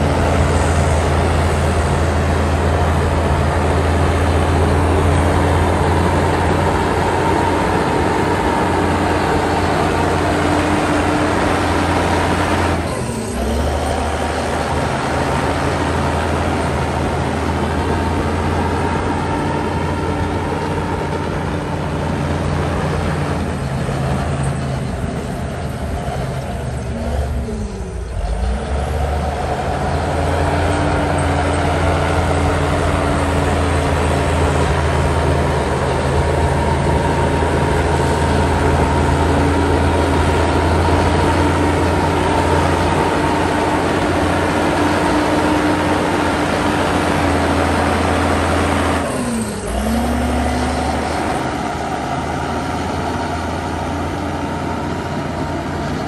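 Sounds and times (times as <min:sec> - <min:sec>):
heavy diesel machinery running: 0:00.0 - 0:56.0.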